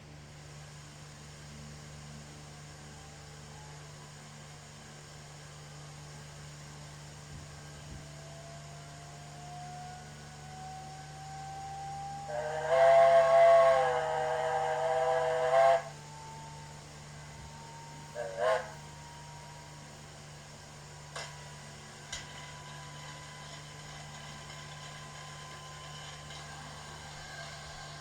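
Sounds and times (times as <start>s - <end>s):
faint steady hiss: 0.0s - 28.0s
steam whistle through small speaker: 7.7s - 16.8s, 17.5s - 19.6s, 22.1s - 28.0s.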